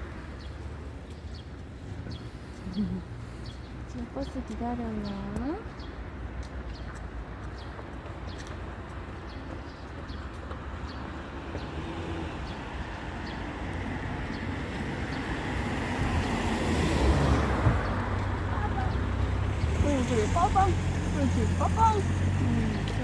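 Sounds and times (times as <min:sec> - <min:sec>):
road traffic rumble: 0:00.0 - 0:23.0
vehicle approaching: 0:00.1 - 0:05.8, 0:10.8 - 0:23.0.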